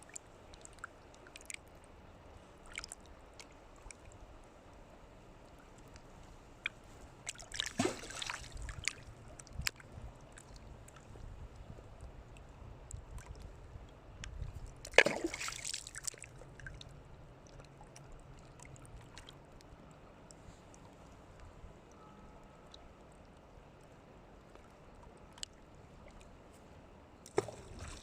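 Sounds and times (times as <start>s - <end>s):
small clicks and drips: 0.0s - 4.7s, 5.4s - 28.0s
water sloshing and splashing: 5.4s - 11.4s, 14.6s - 21.2s, 27.2s - 28.0s.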